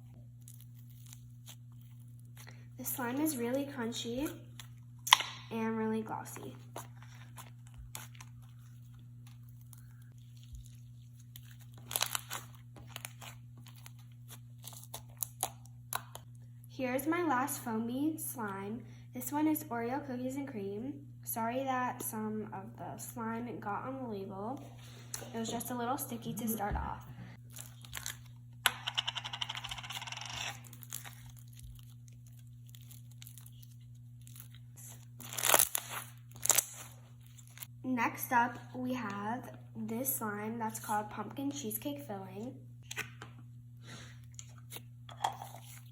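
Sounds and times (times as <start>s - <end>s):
steady low hum: 0.0s - 45.9s
foam bead slime crackling: 30.6s - 37.7s
crunchy slime crackling pops: 35.2s - 36.8s.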